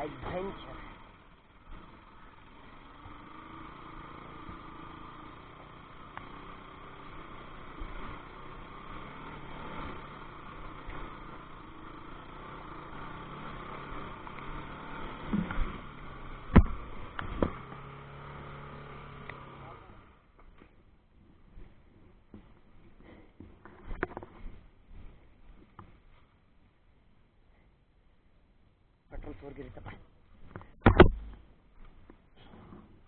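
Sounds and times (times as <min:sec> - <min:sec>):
motorcycle running: 0:00.0 - 0:20.4
sharp knocks: 0:16.5 - 0:17.6, 0:30.8 - 0:31.5.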